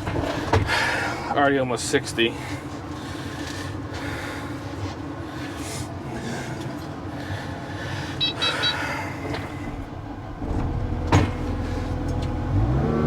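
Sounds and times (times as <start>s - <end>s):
excavator engine running: 0.0s - 13.0s
short electronic beeps: 8.2s - 8.8s.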